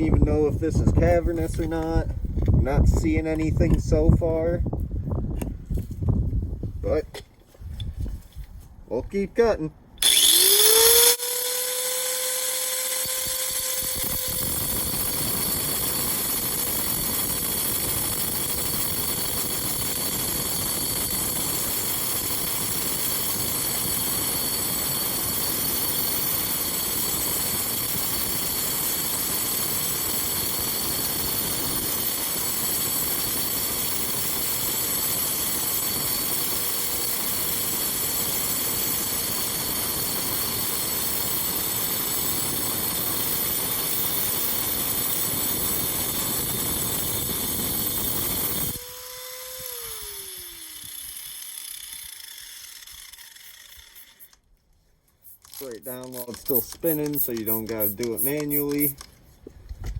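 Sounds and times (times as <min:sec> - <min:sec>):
disc grinding stone: 0:10.0 - 0:48.8, 0:55.4 - 0:59.0
angle grinder whine: 0:10.0 - 0:54.4.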